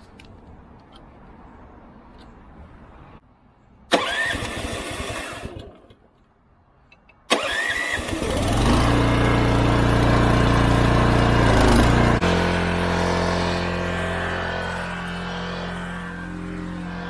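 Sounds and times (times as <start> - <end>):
pressure washer engine humming: 7.4 - 17.0
pressure washer spraying: 10.5 - 17.0.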